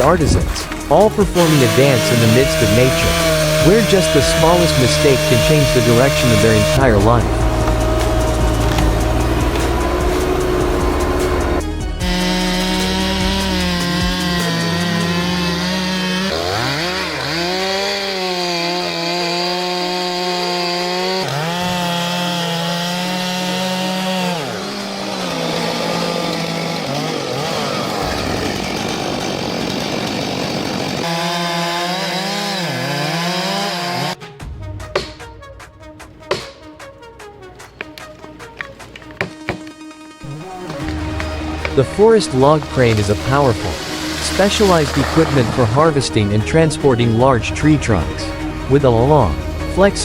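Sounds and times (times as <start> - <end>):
chainsaw cutting wood: 0.0 - 34.2, 37.6 - 50.0.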